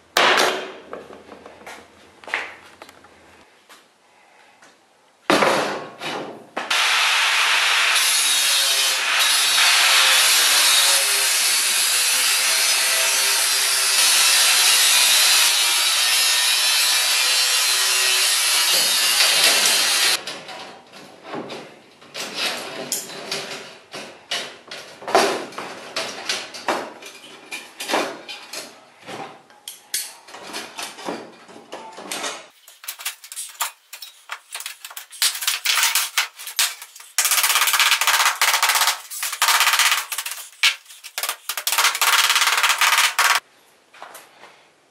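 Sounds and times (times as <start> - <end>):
knocks and scrapes: 32.6 - 43.4
power tool rasping: 32.6 - 43.4.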